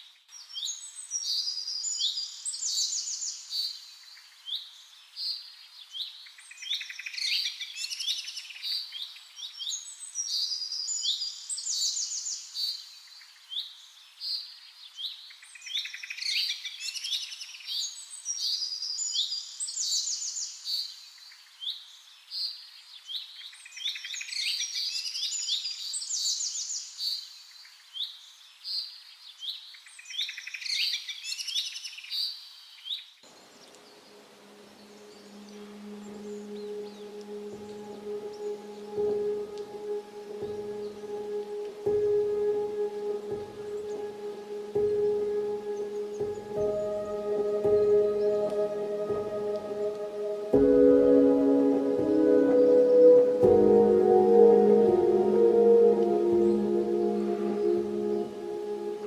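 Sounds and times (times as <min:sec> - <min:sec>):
birds chirping and trilling: 0:33.3 - 0:59.0.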